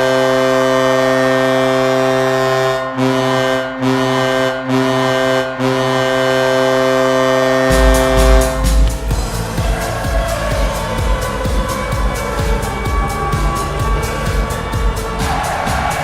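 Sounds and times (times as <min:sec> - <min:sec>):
goal horn blasting: 0:00.0 - 0:09.8.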